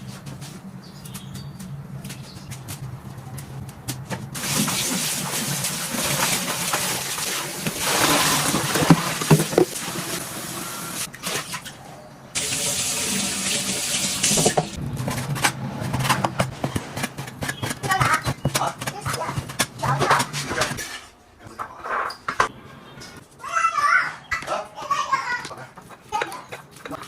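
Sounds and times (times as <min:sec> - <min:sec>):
tap water running into sink: 0:04.4 - 0:11.0, 0:12.4 - 0:14.8.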